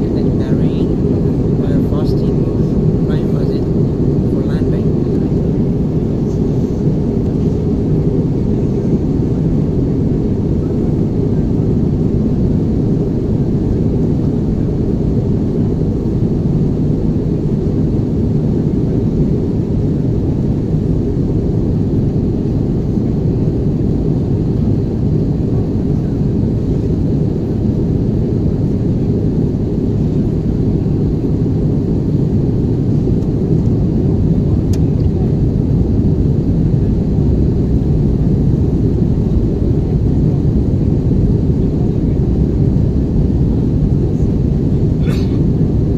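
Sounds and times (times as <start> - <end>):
airplane cabin engine roar: 0.0 - 45.9.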